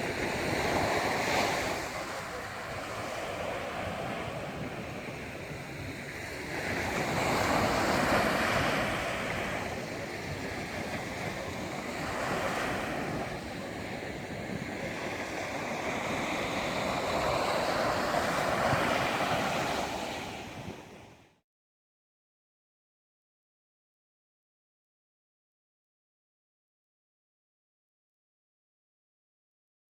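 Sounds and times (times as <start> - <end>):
sea waves breaking on shore: 0.0 - 21.4.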